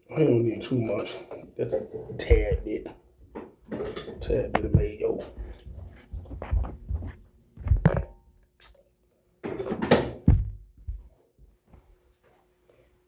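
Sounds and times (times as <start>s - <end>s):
knocks and handling noises: 0.9s - 8.7s, 9.4s - 11.9s.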